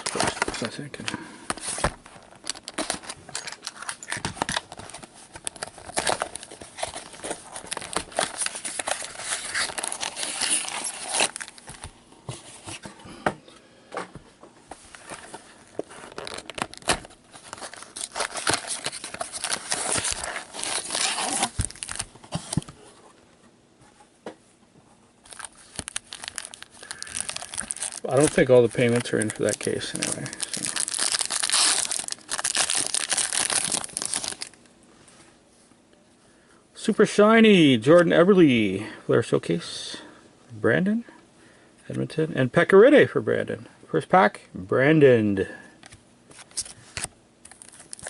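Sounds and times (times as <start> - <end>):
plastic wrap crinkling and tearing: 0.0 - 0.9, 1.6 - 11.9, 15.8 - 22.6, 25.2 - 34.6, 46.5 - 48.0.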